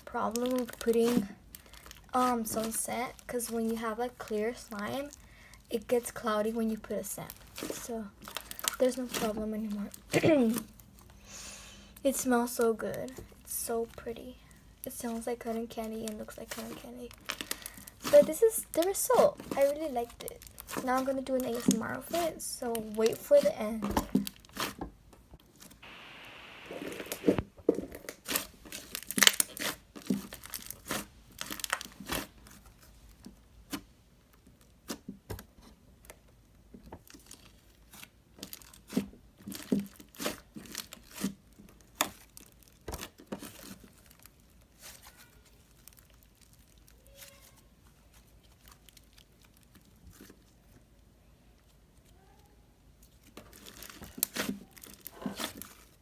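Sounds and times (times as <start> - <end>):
slime crackling and popping: 15.8 - 23.2, 24.2 - 24.8, 28.1 - 32.4, 37.0 - 50.6, 53.0 - 56.0.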